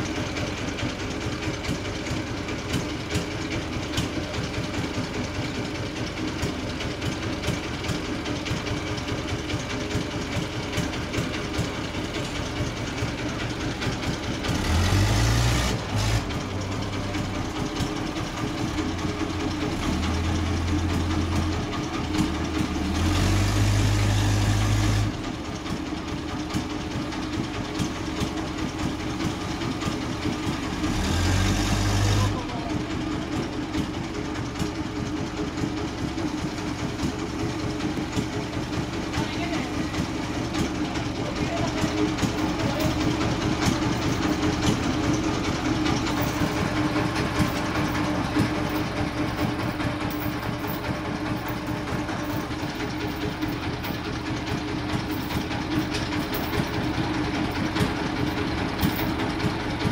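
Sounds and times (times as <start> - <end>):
bandsaw mill drone with ticking: 0.0 - 59.9.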